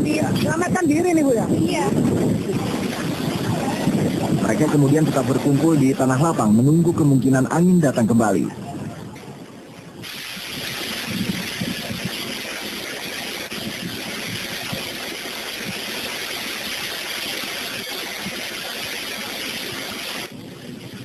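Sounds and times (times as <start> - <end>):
strong storm wind blowing: 0.0 - 16.8, 17.4 - 21.0.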